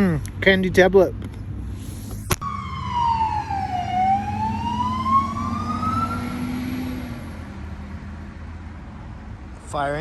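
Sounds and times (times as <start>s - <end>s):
fire engine siren wailing: 2.4s - 7.2s.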